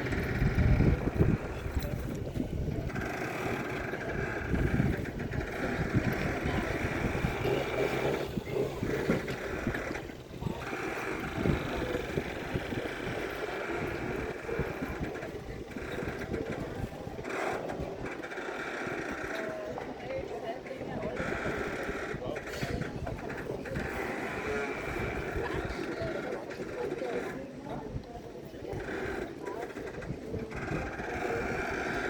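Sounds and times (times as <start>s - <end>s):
engine running: 0.0s - 19.8s.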